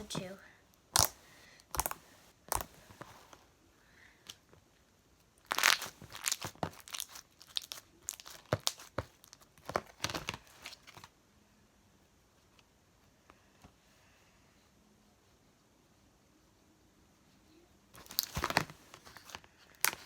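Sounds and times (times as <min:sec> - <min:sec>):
plastic container crinkling: 0:05.4 - 0:11.0, 0:18.0 - 0:20.0.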